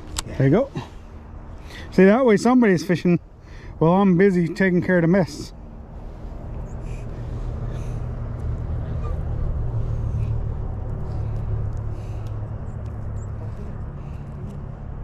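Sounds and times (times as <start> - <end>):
motor vehicle engine rumble: 3.2 - 15.0.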